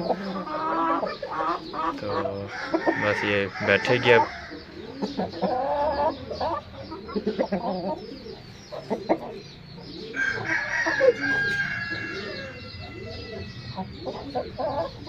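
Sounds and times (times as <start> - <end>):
chickens clucking: 0.0 - 15.0
rooster crowing: 2.5 - 4.6, 10.1 - 13.8.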